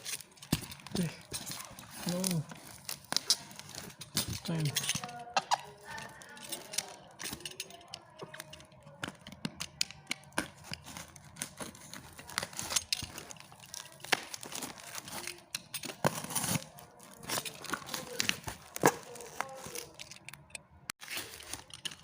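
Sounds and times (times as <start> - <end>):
packaging torn and crinkled: 0.0 - 8.6, 10.3 - 22.0.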